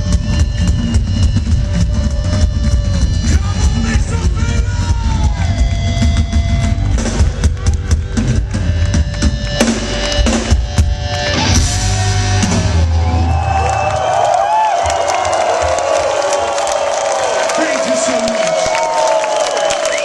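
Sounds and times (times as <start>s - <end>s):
live rock band playing: 0.0s - 14.0s
drum kit: 0.0s - 16.3s.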